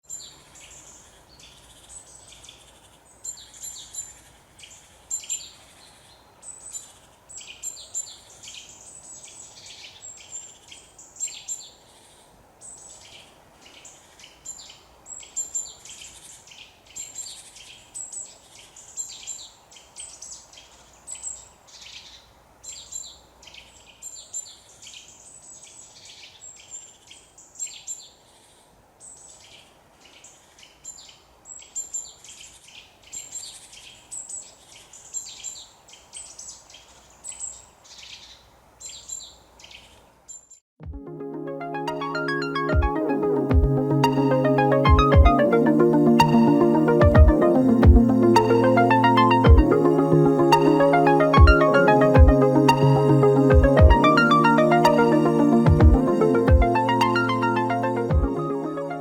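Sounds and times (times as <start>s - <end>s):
faint steady hiss: 0.0s - 40.6s
small birds chirping and singing: 0.0s - 40.6s, 41.9s - 59.0s.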